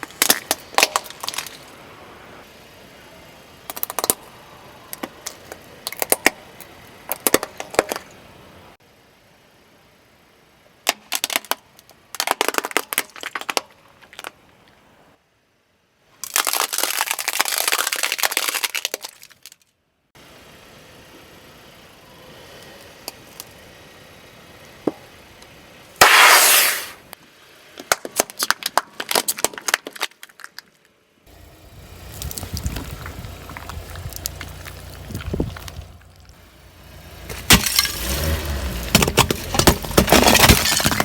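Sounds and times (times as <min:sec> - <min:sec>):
objects crunching under tyres: 0:00.0 - 0:02.5, 0:03.6 - 0:08.5, 0:10.9 - 0:14.9, 0:16.2 - 0:19.7, 0:26.0 - 0:27.1, 0:27.7 - 0:41.0
car rumble: 0:31.0 - 0:41.0.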